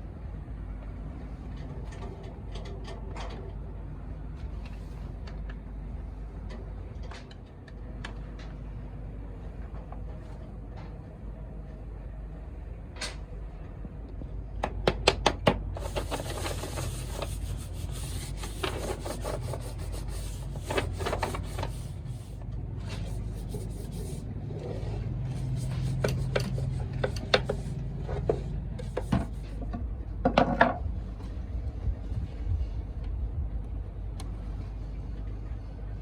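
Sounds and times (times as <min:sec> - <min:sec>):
wood rubbing and scraping: 0:15.8 - 0:29.6.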